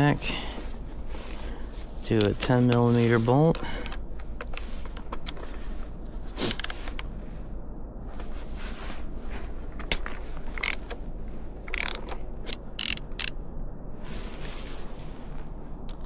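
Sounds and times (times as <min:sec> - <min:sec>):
ratchet wrench clicking: 0:10.6 - 0:10.8, 0:11.7 - 0:13.3.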